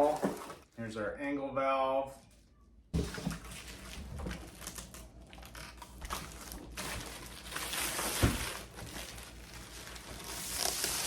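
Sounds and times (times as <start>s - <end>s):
plastic packaging crinkling: 3.3s - 11.0s.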